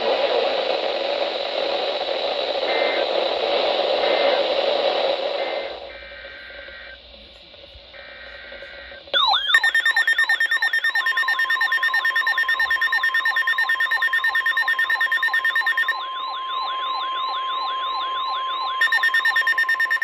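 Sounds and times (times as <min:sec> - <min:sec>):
faint radio hiss: 0:00.0 - 0:09.3
steady warning tone: 0:05.4 - 0:20.0
warbling siren over pulsing beep: 0:08.0 - 0:20.0.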